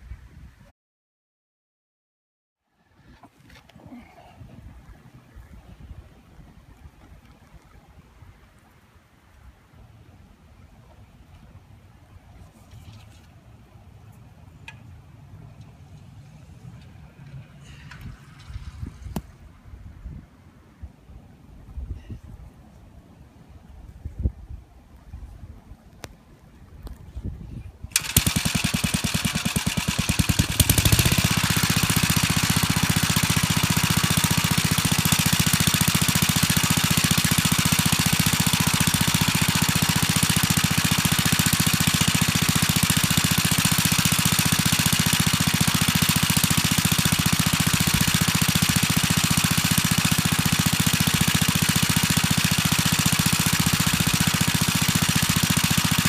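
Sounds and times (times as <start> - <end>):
single-cylinder engine running: 27.9 - 56.0.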